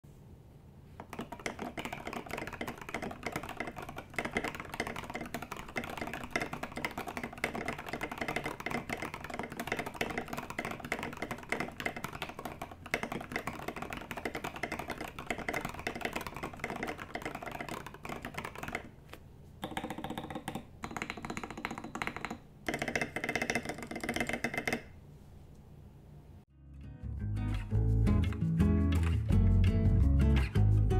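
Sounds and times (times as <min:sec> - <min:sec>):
fast typing on mechanical keyboard: 0:01.0 - 0:18.9, 0:19.6 - 0:24.9.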